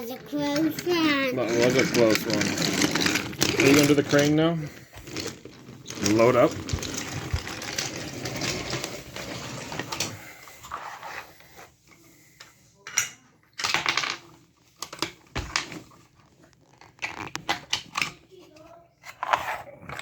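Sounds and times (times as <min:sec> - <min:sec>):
toy train pieces clicking: 0:00.5 - 0:04.4.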